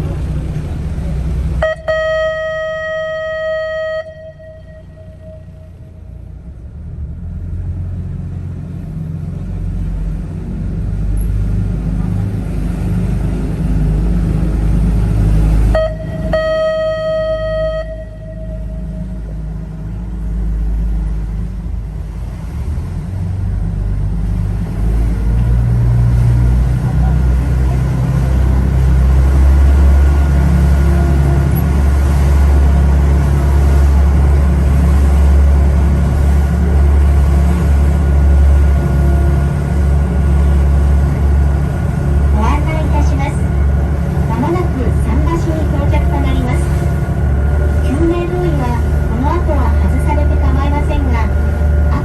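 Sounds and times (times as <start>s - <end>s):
boat engine rumbling: 0.0s - 52.0s
boat horn toots: 1.6s - 6.3s, 15.0s - 20.8s, 25.3s - 52.0s.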